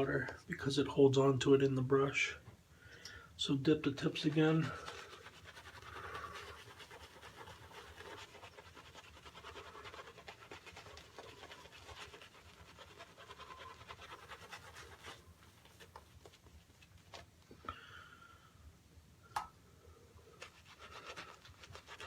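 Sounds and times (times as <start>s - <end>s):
shaving brush swishing lather: 3.9s - 17.3s, 20.4s - 22.0s.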